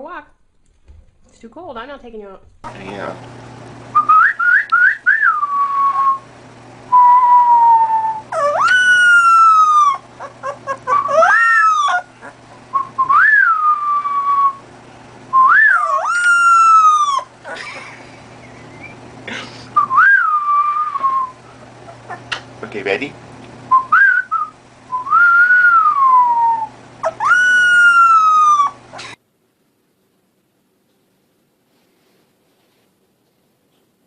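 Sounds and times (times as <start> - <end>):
dog whining and howling: 6.9 - 14.6, 15.4 - 17.8, 19.9 - 22.3, 23.7 - 29.2.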